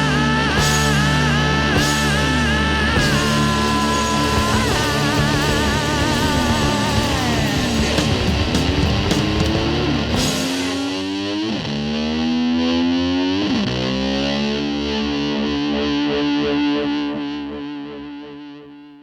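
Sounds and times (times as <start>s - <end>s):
rock drums and cymbals: 0.0s - 11.8s
distorted electric guitar: 0.0s - 19.0s.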